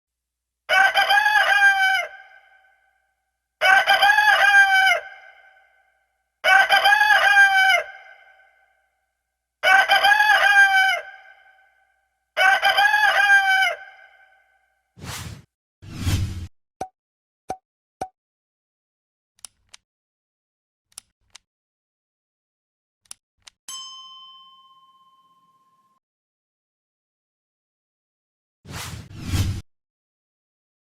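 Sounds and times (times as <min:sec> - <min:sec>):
rooster crowing: 0:00.7 - 0:02.6.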